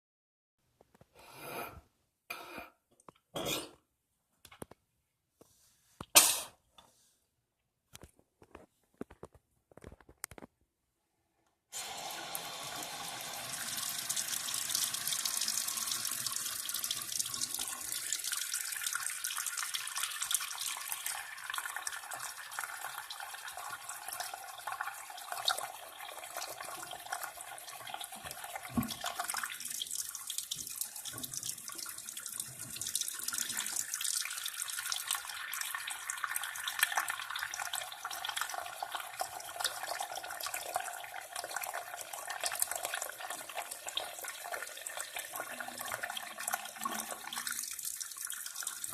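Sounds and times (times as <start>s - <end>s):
person coughing: 3.3s - 3.8s, 6.2s - 6.6s
faucet running into a sink: 11.8s - 48.9s.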